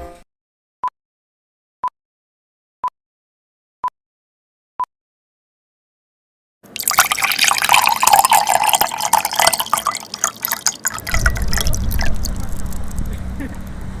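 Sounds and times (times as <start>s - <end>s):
low rumble: 11.0s - 14.0s.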